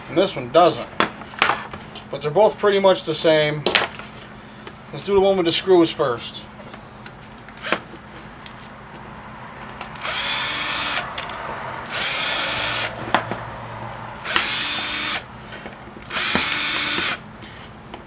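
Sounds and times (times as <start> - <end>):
power drill bursts: 7.5 - 7.9, 9.9 - 13.1, 14.2 - 15.4, 16.0 - 17.3.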